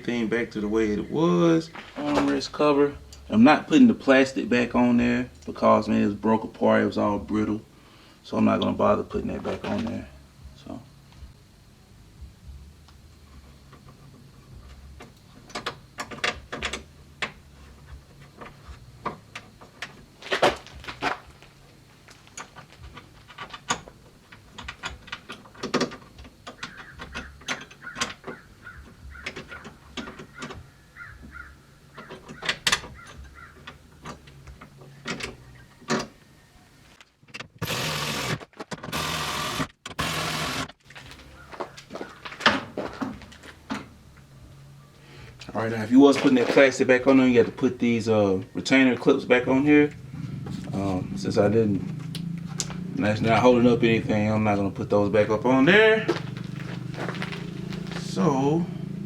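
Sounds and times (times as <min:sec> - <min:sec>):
dense mechanical rattle: 0:55.9 - 0:59.0.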